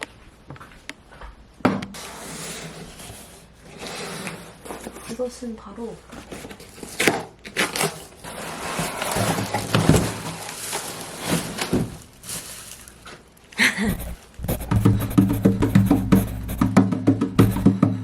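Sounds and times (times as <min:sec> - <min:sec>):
rustling and handling noises: 0:02.0 - 0:16.8
music with percussive beat: 0:14.0 - 0:18.0.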